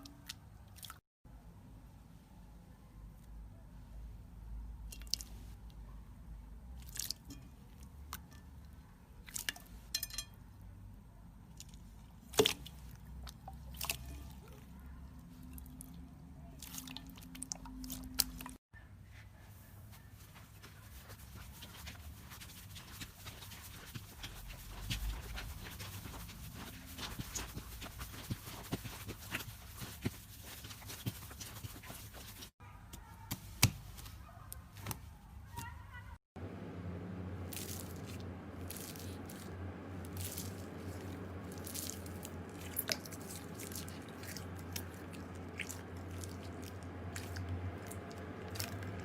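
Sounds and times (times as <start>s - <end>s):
slime squishing with wet clicks: 4.8s - 5.9s, 6.7s - 10.4s, 11.4s - 18.6s, 37.5s - 49.0s
low hum: 36.4s - 49.0s.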